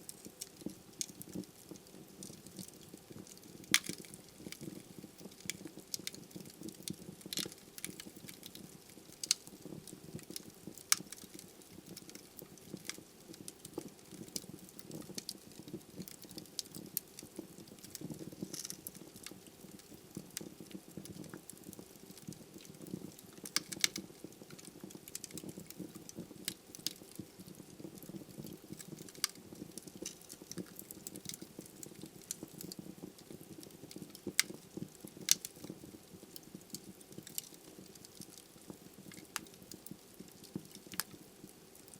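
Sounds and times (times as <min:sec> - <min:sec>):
logs crackling: 0:00.1 - 0:08.6, 0:23.4 - 0:25.8
sharp pops of fire: 0:00.1 - 0:22.3.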